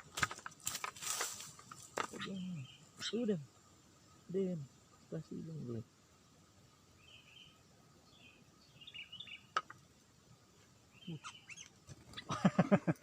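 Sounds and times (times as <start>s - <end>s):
bird chirps: 2.0s - 4.5s, 6.9s - 9.7s, 10.9s - 12.3s.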